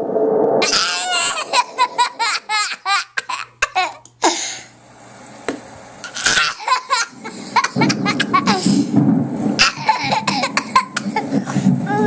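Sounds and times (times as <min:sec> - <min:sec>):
baby laughing: 0:00.6 - 0:04.1, 0:06.0 - 0:08.8, 0:09.6 - 0:11.4.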